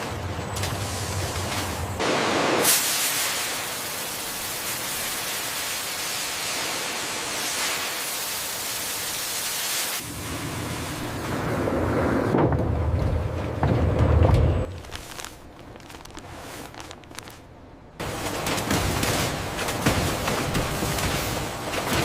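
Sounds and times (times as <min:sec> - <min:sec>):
loud steady hiss: 0:02.0 - 0:11.0.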